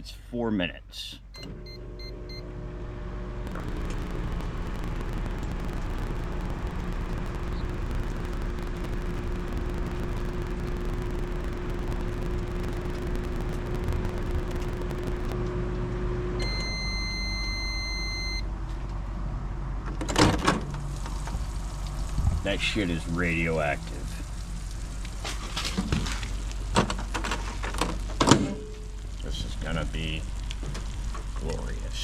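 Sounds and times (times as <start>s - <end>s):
microwave oven hum and fan: 1.4s - 23.4s
long high-pitched beep: 16.4s - 18.4s.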